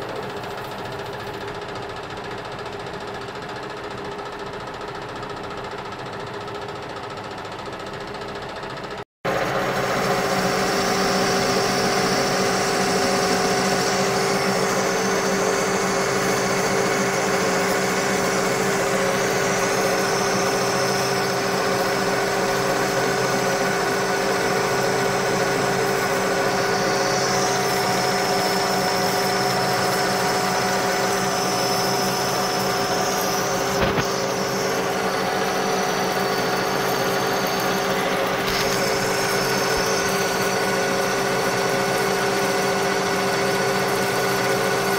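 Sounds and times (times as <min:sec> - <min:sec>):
metal lathe humming: 0:09.3 - 0:44.9.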